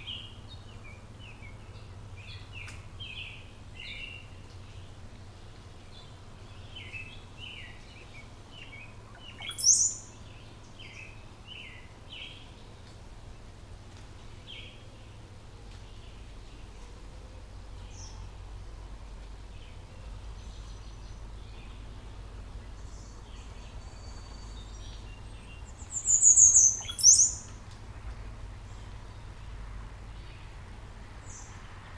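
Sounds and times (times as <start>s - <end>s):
faint low hum: 0.0s - 31.9s
songbirds chirping: 0.0s - 31.9s
loud high-pitched bird call: 9.4s - 10.0s, 25.9s - 27.5s.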